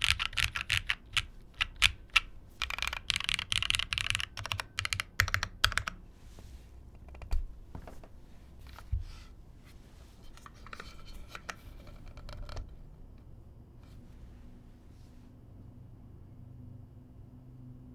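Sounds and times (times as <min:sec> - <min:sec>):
light keyboard clicks: 0:00.0 - 0:06.0, 0:06.9 - 0:08.8
low thumps on keyboard: 0:07.0 - 0:08.3.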